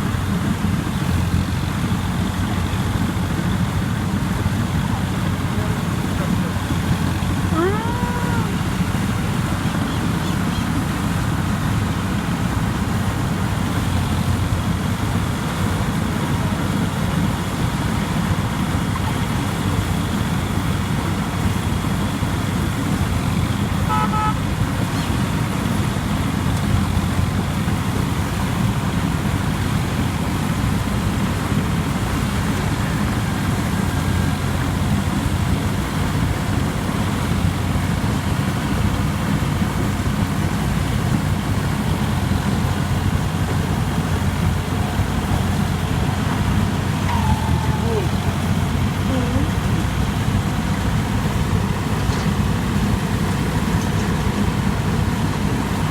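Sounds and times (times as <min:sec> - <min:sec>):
diesel engine running under load: 0:00.0 - 0:55.9
short high beep: 0:47.0 - 0:48.2.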